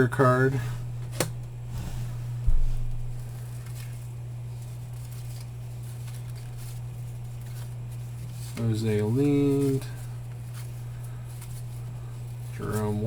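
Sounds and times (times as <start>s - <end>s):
steady low hum: 0.0s - 13.0s
low thump: 2.4s - 3.2s
cards rustling: 2.8s - 13.0s.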